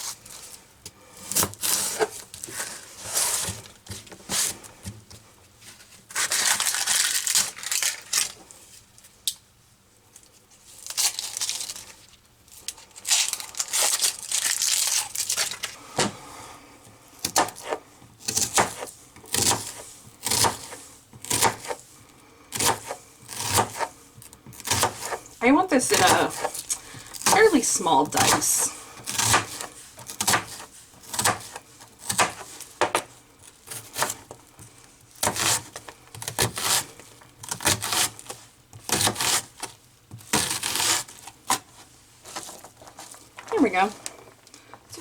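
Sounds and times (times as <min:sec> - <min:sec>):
onion skin rustling and tearing: 0:01.2 - 0:04.6, 0:05.7 - 0:09.4, 0:10.1 - 0:15.8, 0:22.5 - 0:44.2.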